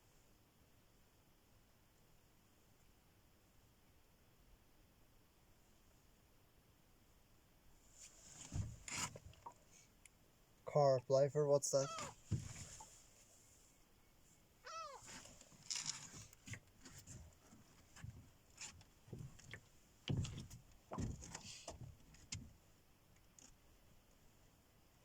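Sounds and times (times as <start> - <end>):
rustles: 7.8 - 10.2, 11.8 - 24.6
gull call: 11.8 - 12.2.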